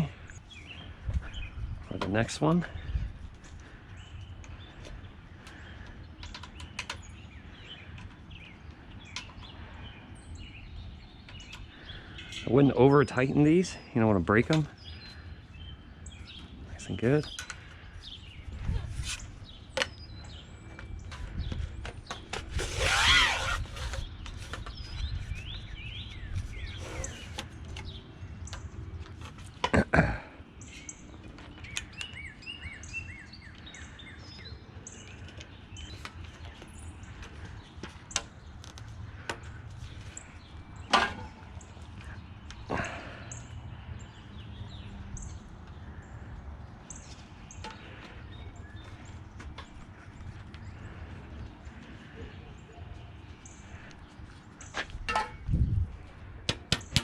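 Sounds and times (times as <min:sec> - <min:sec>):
birds chirping: 0:00.0 - 0:57.0
metal pole sections clattering: 0:55.0 - 0:55.5.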